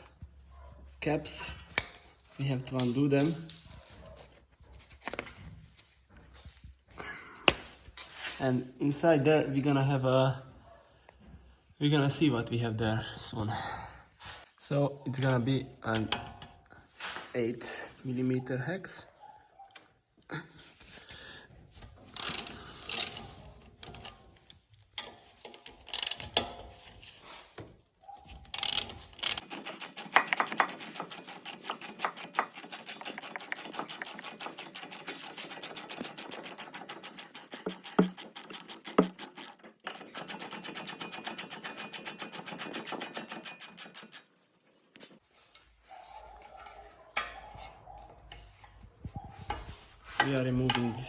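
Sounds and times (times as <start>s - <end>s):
ratchet wrench clicking: 22.2s - 23.2s, 25.9s - 26.2s, 28.6s - 44.3s
tools clattering on metal: 28.6s - 44.4s.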